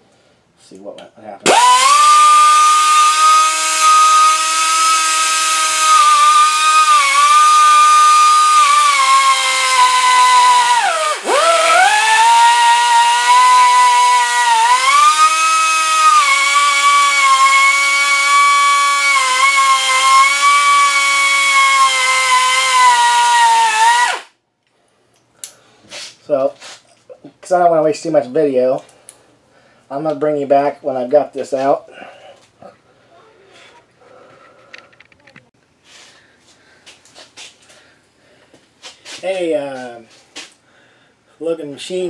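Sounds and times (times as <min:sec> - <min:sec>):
die grinder whining: 0:01.5 - 0:24.3.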